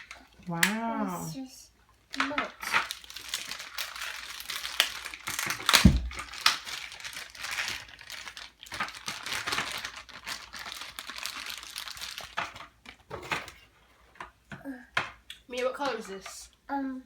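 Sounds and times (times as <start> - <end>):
plastic packaging crinkling: 2.1 - 13.5
thump: 5.8 - 6.2.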